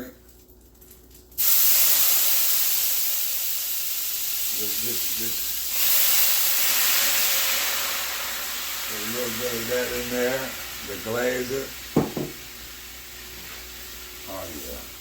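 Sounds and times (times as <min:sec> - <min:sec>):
liquid sizzling in hot skillet: 0:01.4 - 0:15.0.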